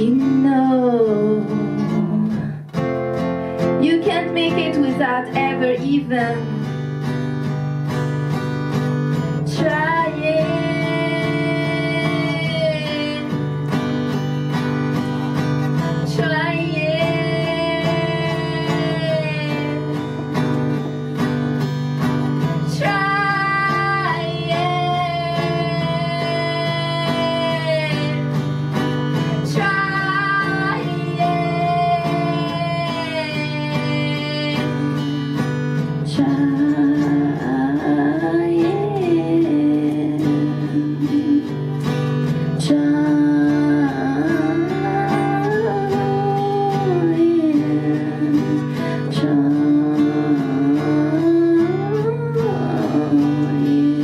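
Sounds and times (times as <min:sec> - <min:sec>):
strummed acoustic guitar: 0:00.0 - 0:54.0
woman singing long held notes: 0:09.4 - 0:13.4, 0:16.0 - 0:20.4, 0:22.7 - 0:28.4, 0:29.4 - 0:41.8, 0:42.6 - 0:54.0.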